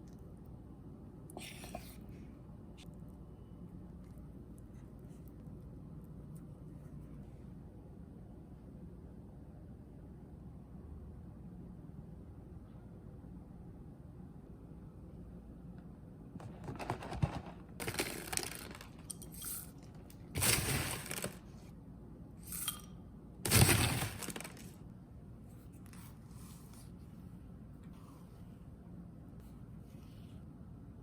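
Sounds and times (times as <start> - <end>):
packaging rustling and tearing: 16.4 - 19.1, 20.3 - 21.6, 23.5 - 24.8.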